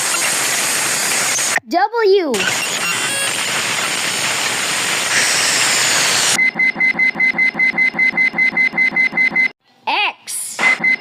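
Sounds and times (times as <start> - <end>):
short beeping pulses: 6.2 - 9.5, 10.6 - 11.0.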